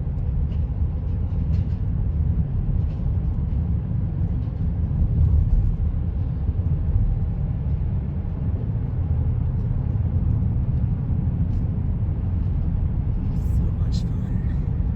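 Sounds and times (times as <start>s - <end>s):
car road noise from inside: 4.9s - 14.9s.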